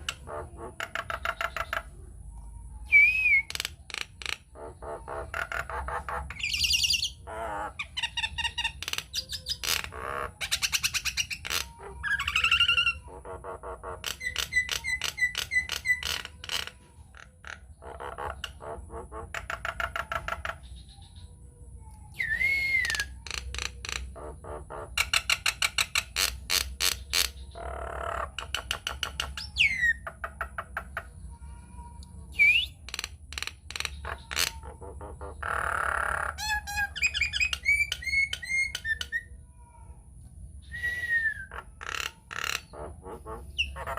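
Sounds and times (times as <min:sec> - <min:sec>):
myna calling and whistling: 0:02.8 - 0:03.8, 0:22.0 - 0:24.6, 0:32.3 - 0:32.9, 0:40.6 - 0:43.9.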